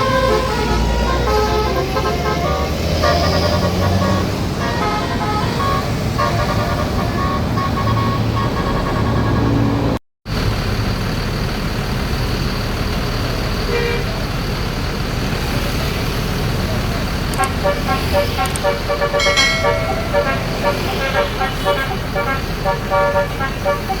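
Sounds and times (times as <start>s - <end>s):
bus horn playing a tune: 0.0s - 9.8s, 13.7s - 14.1s, 17.4s - 24.0s
bus engine and road noise: 0.0s - 24.0s.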